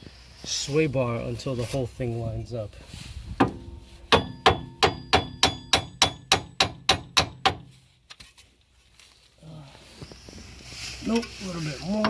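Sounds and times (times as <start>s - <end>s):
hammer striking metal bar: 3.4s - 7.7s.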